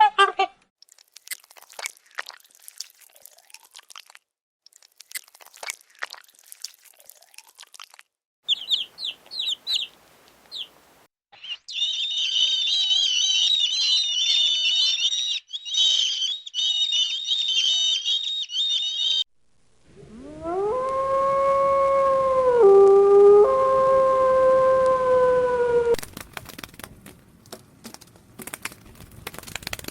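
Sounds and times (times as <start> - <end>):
birds chirping: 8.5 - 19.2
rising howl: 19.9 - 26.0.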